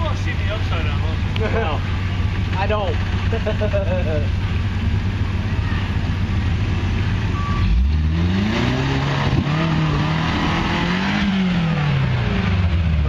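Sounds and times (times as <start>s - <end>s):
vehicle engine revving: 0.0s - 13.0s.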